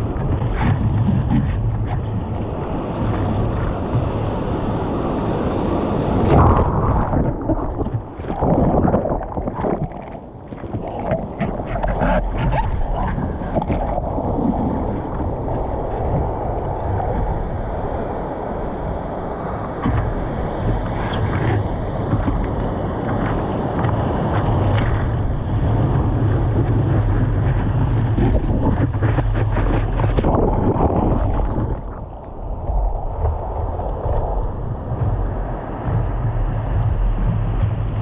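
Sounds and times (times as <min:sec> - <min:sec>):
ocean surf splashing: 0:00.0 - 0:38.0
wind rumbling on microphone: 0:00.0 - 0:38.0.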